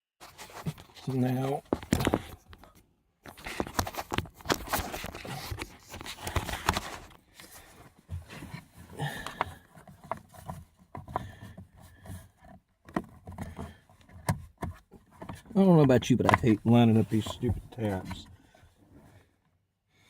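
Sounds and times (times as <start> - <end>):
hard plastic parts clicking: 12.9 - 18.2.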